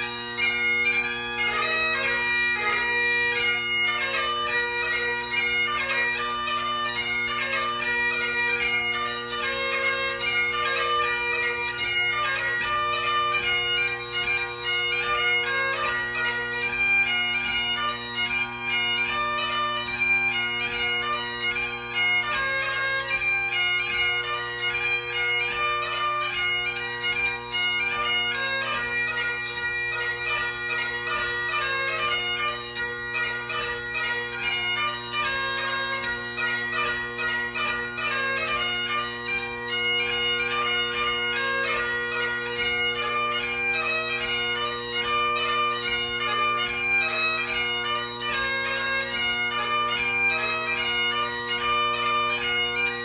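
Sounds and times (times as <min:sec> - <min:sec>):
bagpipe chanter melody: 0:00.0 - 0:53.0
bagpipe drones: 0:00.0 - 0:53.0.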